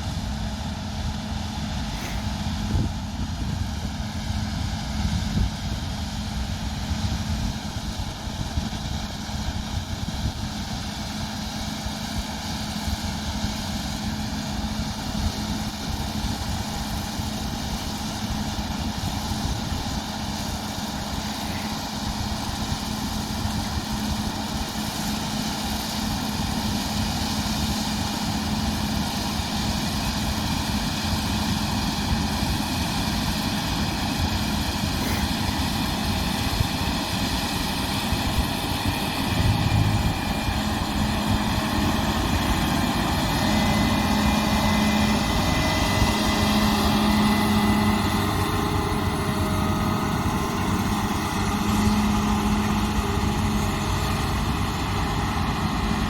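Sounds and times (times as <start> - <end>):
combine harvester running: 0.0 - 56.0
low thump: 39.3 - 41.5.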